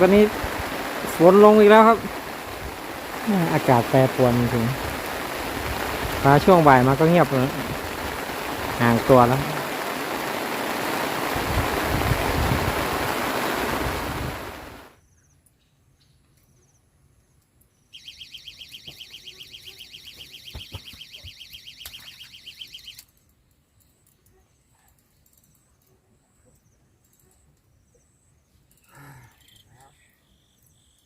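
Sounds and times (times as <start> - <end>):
steady rain hiss: 0.0 - 15.0.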